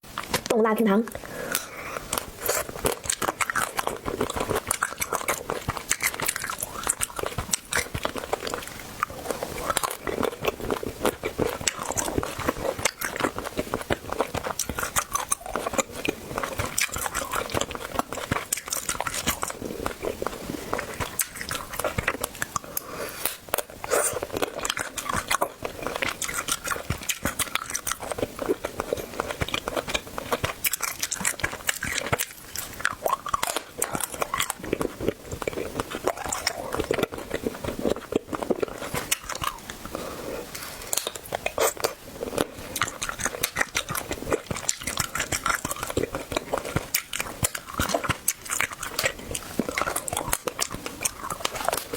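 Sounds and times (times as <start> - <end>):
person chewing crunchy food: 1.1 - 51.9.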